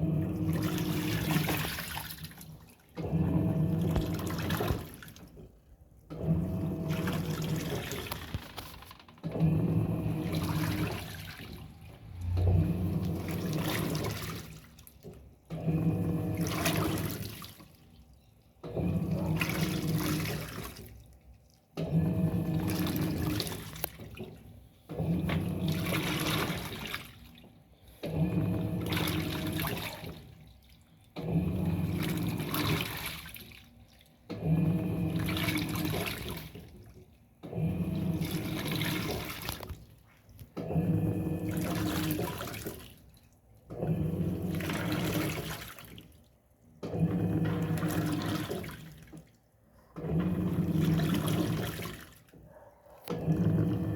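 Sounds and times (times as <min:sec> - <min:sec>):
washing machine agitating: 0:00.0 - 0:53.9.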